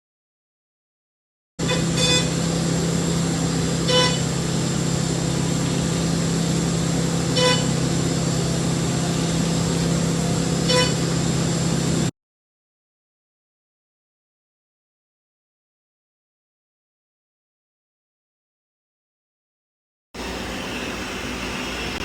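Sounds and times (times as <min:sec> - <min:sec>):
milling machine humming and whining: 0:01.6 - 0:12.1, 0:20.2 - 0:22.0.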